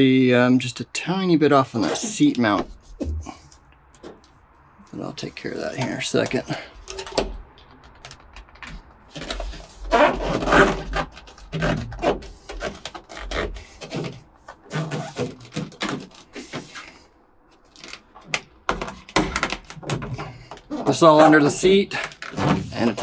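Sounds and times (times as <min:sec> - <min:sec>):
dull thumps: 0:01.9 - 0:04.2.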